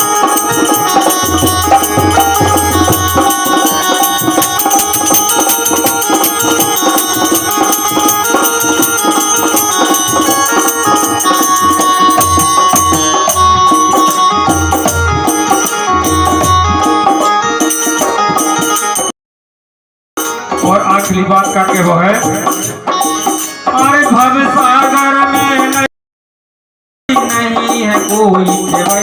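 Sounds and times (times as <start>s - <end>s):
hand drums: 0.0s - 19.1s, 20.2s - 25.9s, 27.1s - 29.0s
jingling tambourine: 0.0s - 19.1s, 20.2s - 25.9s, 27.1s - 29.0s
sustained melody notes: 0.0s - 19.1s.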